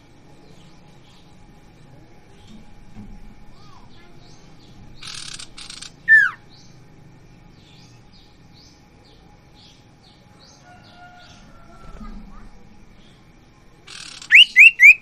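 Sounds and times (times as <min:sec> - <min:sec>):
soft high bird chirps: 0:03.5 - 0:06.8, 0:13.9 - 0:15.0.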